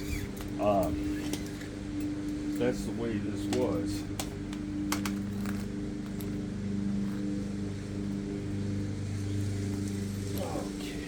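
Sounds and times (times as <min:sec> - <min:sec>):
low machine hum: 0:00.0 - 0:11.0
light clicks of bicycle parts: 0:03.4 - 0:06.4.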